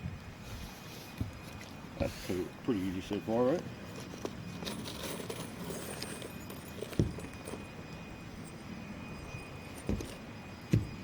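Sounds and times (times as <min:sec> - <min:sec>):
outdoor background noise: 0:00.0 - 0:11.0
dull thumps: 0:10.7 - 0:11.0.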